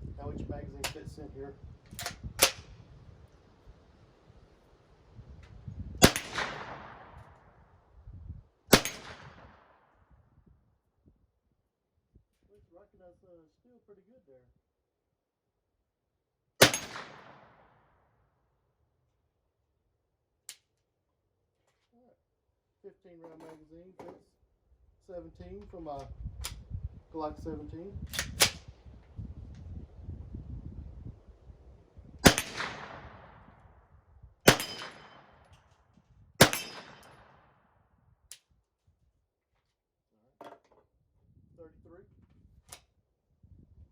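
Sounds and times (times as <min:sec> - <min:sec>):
gunshot: 0:06.0 - 0:07.2, 0:08.7 - 0:09.7, 0:16.6 - 0:17.8, 0:32.2 - 0:33.5, 0:34.5 - 0:35.4, 0:36.4 - 0:37.5.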